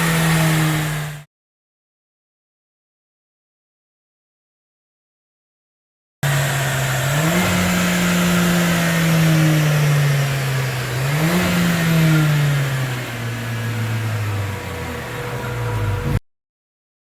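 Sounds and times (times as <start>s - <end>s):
car engine revving: 0.0s - 1.2s, 6.2s - 16.2s.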